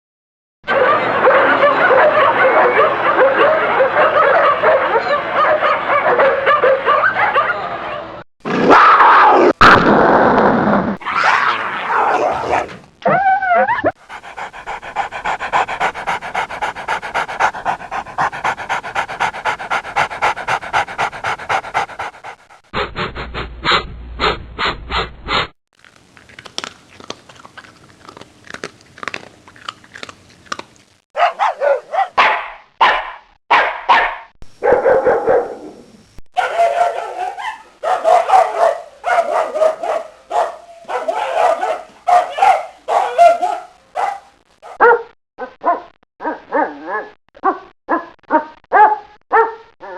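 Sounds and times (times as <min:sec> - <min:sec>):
dog barking and yelping: 0:00.7 - 0:07.6, 0:12.0 - 0:22.6, 0:31.2 - 0:35.6, 0:36.4 - 0:45.0
dog panting fast: 0:14.0 - 0:23.5.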